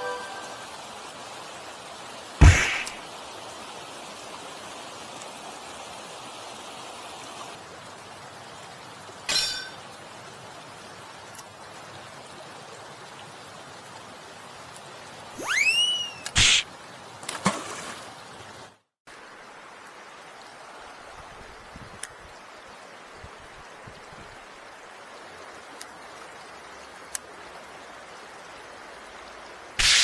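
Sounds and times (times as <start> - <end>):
mountain stream running: 0.0 - 21.6
sharp knocks: 2.4 - 3.0
whistling swoop: 15.4 - 16.6, 29.8 - 30.0.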